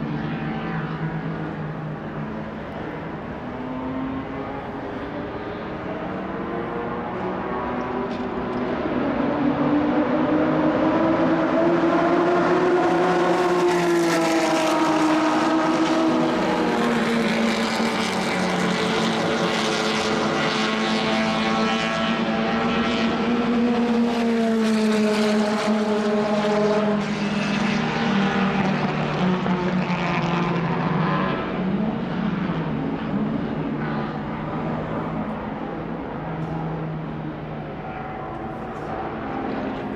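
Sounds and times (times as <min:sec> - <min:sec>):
racing car engines passing: 0:00.0 - 0:39.9.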